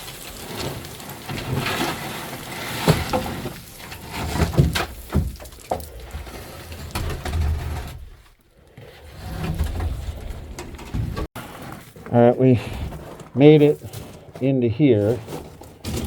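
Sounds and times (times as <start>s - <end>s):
scraping and crunching on rock: 0.0s - 16.0s.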